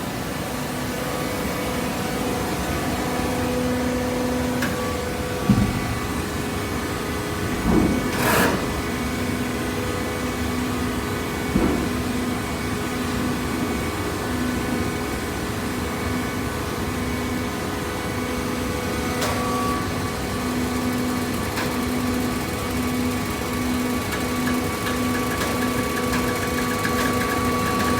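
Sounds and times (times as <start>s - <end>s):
baler machine hum: 19.2s - 27.9s.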